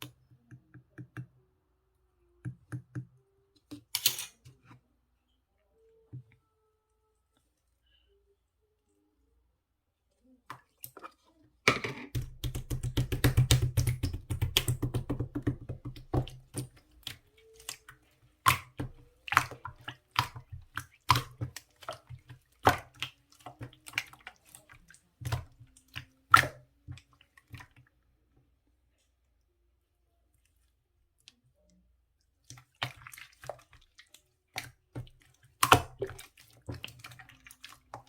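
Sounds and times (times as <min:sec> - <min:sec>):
slime being kneaded: 0:12.2 - 0:27.7.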